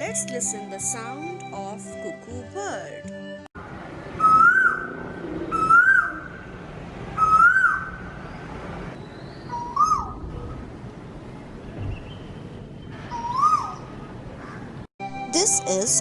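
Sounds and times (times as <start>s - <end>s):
cuckoo whistled calls: 4.2s - 4.9s, 5.5s - 6.4s, 7.2s - 8.0s, 9.0s - 10.2s, 13.0s - 13.9s.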